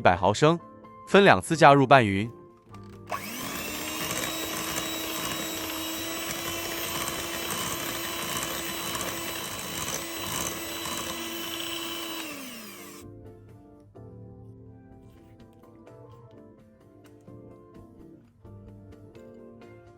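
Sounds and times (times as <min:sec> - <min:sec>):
background music: 0:00.0 - 0:19.9
electric mixer running: 0:03.0 - 0:13.0.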